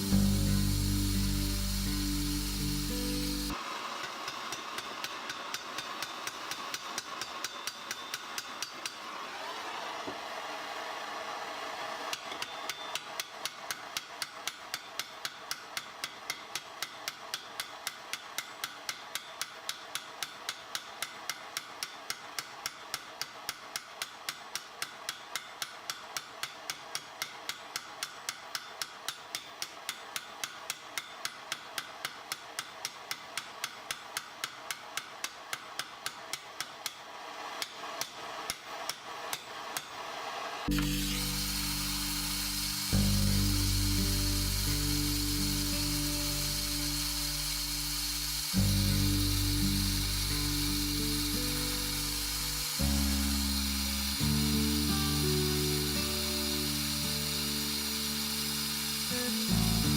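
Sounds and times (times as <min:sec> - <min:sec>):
steady hum with hiss: 0:00.0 - 0:23.4, 0:39.4 - 0:59.9
hammer striking a rivet: 0:04.1 - 0:09.0, 0:12.1 - 0:39.9.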